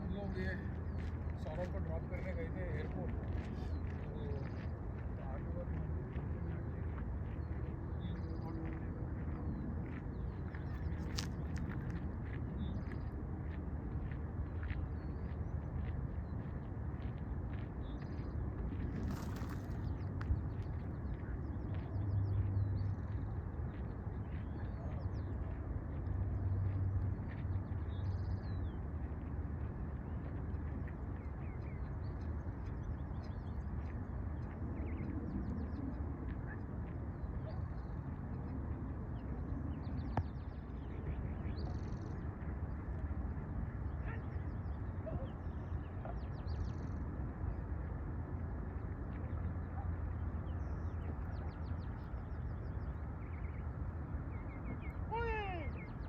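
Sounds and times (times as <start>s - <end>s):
birds chirping: 0.0s - 29.3s, 48.7s - 56.0s
steady low rumble: 0.0s - 56.0s.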